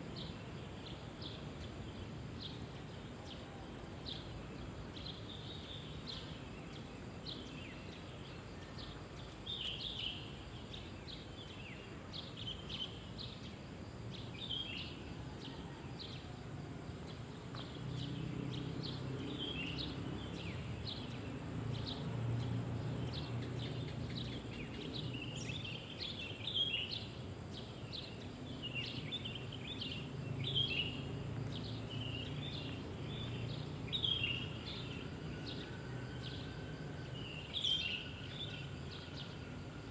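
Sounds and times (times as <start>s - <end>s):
crickets trilling: 0.0s - 39.9s
small birds chirping: 17.5s - 36.4s.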